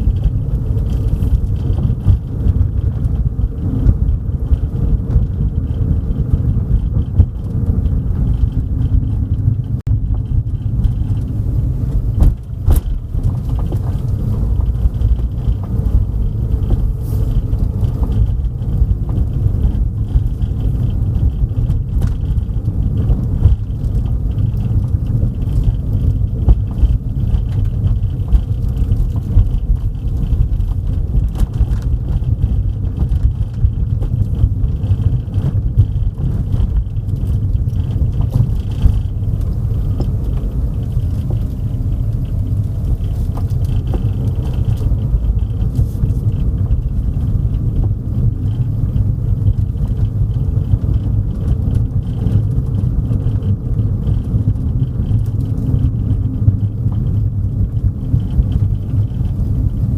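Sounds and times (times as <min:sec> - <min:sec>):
car interior road and engine rumble: 0:00.0 - 0:59.9.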